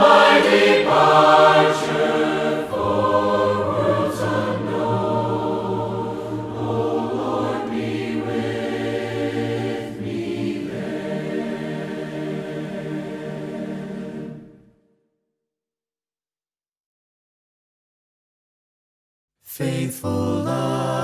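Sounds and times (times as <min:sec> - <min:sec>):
choir singing in harmony: 0:00.0 - 0:14.8, 0:19.6 - 0:21.0.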